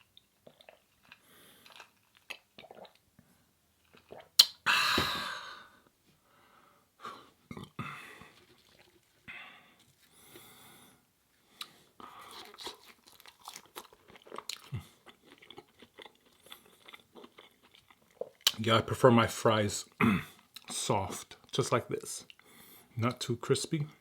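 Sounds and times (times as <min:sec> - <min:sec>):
wet mouth clicks: 0:04.0 - 0:04.6
crunchy bites: 0:11.6 - 0:18.6.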